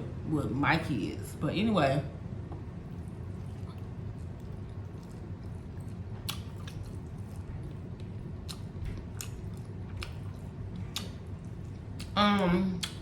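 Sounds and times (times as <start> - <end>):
low background hum: 0.0 - 13.0
chewing food: 2.4 - 12.2, 12.8 - 13.0
wet mouth clicks and smacks: 5.9 - 7.4, 12.8 - 13.0.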